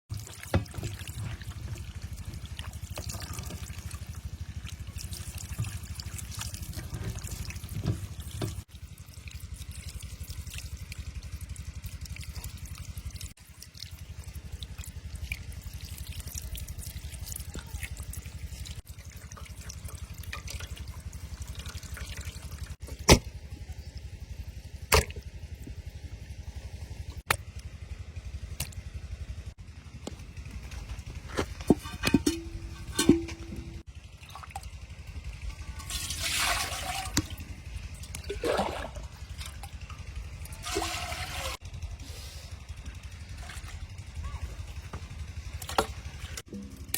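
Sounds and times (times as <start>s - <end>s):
water trickling and dripping: 0.1s - 22.8s.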